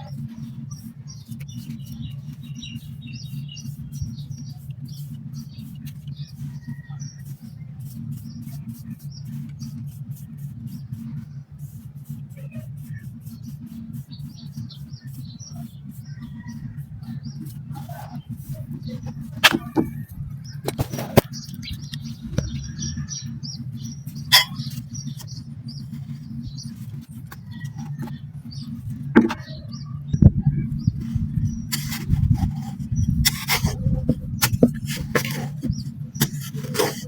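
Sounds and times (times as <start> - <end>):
low hum: 21.5 - 34.8.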